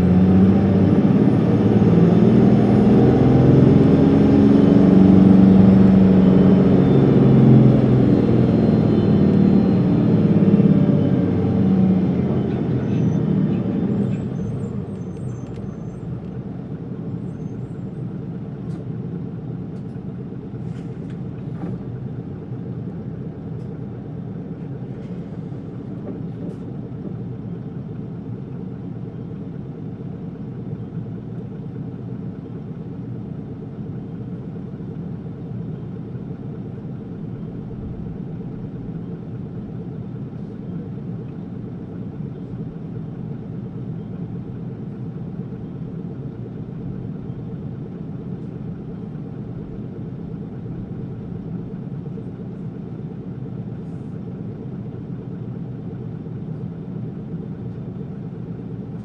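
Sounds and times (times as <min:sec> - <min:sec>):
bus diesel engine rumbling: 0:00.0 - 0:59.0.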